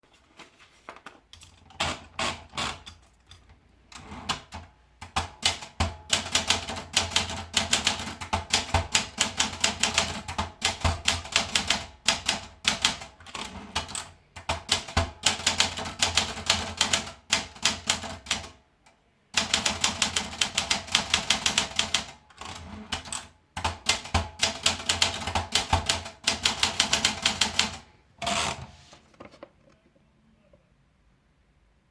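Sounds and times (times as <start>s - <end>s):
manual typewriter clacking: 4.0s - 18.6s, 19.4s - 28.6s.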